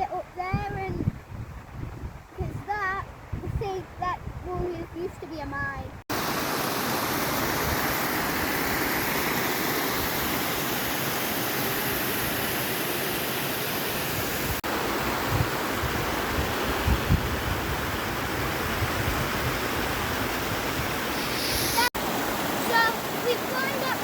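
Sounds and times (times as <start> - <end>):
river water rushing: 6.1 - 24.0.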